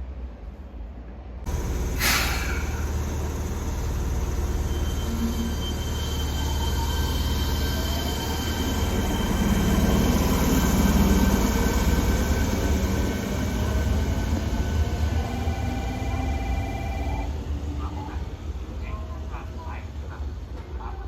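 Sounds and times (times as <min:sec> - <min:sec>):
train rumble and wheel noise: 0:00.0 - 0:21.0
electric train motor whine: 0:01.5 - 0:17.3.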